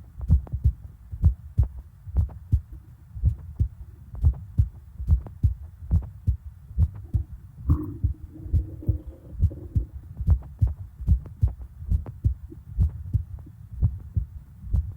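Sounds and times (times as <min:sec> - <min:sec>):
heartbeat thumps: 0:00.0 - 0:14.9
stomach gurgle: 0:07.0 - 0:10.2.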